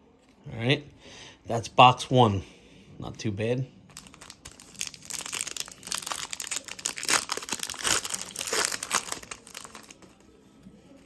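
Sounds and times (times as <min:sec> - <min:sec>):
plastic wrapping tearing and crinkling: 0:03.9 - 0:10.2.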